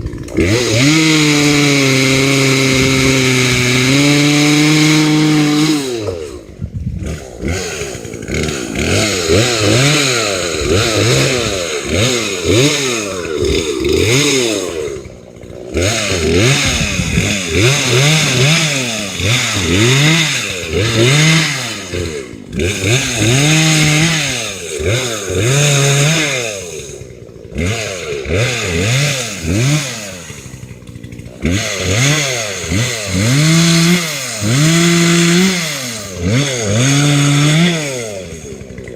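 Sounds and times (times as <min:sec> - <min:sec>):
chainsaw cutting and revving: 0:00.0 - 0:38.9.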